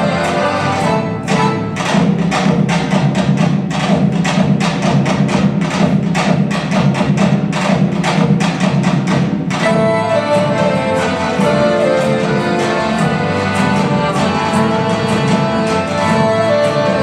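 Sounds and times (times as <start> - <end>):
quick drum beat: 1.3 - 17.0
melody on held notes: 9.6 - 17.0.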